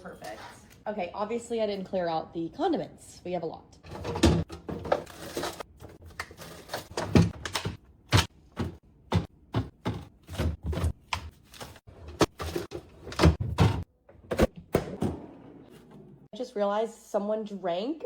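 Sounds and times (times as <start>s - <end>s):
groceries knocking on fridge shelves: 4.1s - 13.9s.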